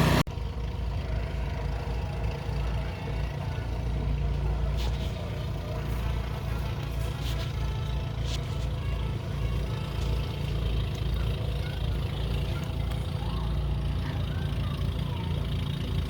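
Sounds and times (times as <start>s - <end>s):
snowblower engine running: 0.0s - 16.0s.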